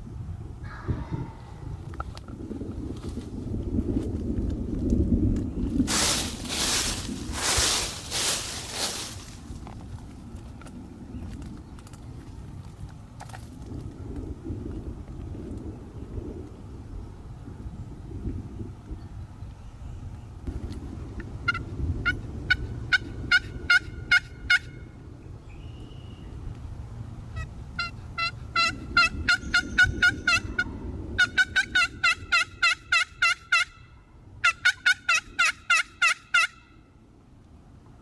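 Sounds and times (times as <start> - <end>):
low outdoor rumble: 0.0 - 32.0
wild turkey yelping: 27.8 - 33.7, 34.4 - 36.7.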